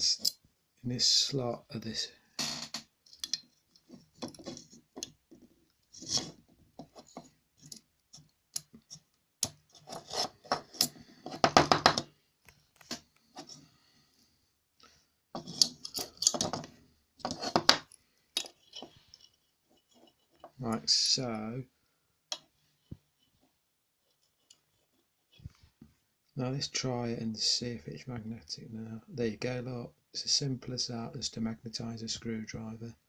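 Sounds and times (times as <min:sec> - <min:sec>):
screwdriver shaft scraping and clicking: 0:06.0 - 0:11.4, 0:15.4 - 0:17.8.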